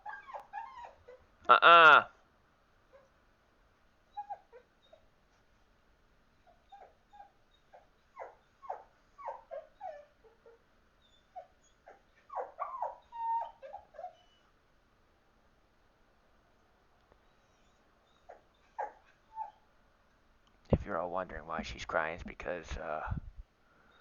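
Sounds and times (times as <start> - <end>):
dog whining and crying: 0.0 - 1.3, 4.1 - 5.1, 6.4 - 14.5, 17.2 - 19.7.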